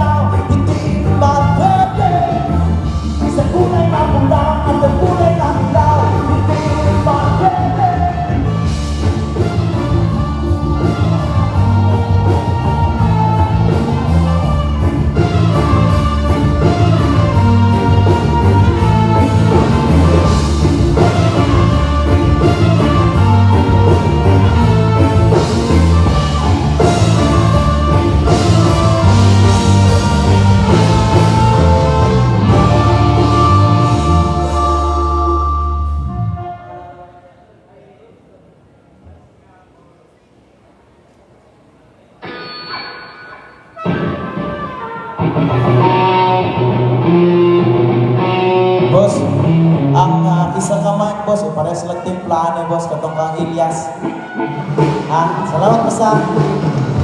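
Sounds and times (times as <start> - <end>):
drum kit beat: 0.0 - 36.1, 54.6 - 57.0
heavy bass: 0.0 - 36.8, 45.2 - 51.1
live band playing: 0.0 - 37.4, 42.2 - 57.0.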